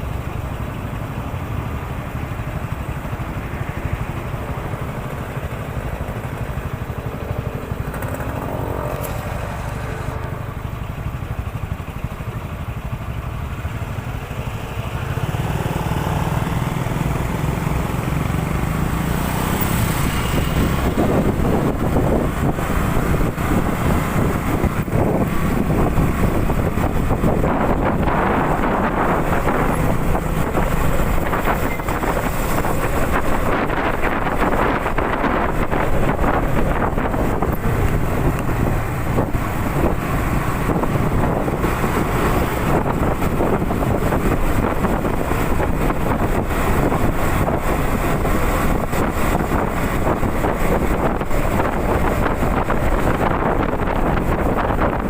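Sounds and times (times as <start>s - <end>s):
motorcycle engine running: 0.0s - 55.0s
wind buffeting microphone: 16.4s - 55.0s.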